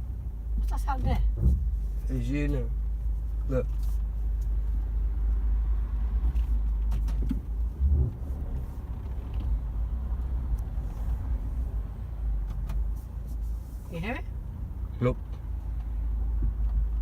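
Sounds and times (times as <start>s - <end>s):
road and engine rumble in car: 0.0s - 17.0s
low thump: 1.0s - 1.9s.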